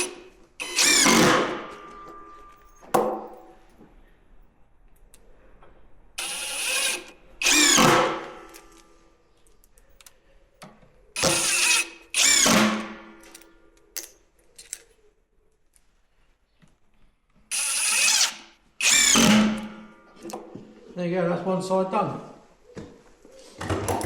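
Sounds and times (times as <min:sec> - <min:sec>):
power drill driving screws: 0:00.0 - 0:02.0, 0:06.2 - 0:08.8, 0:11.2 - 0:13.4, 0:17.5 - 0:19.9.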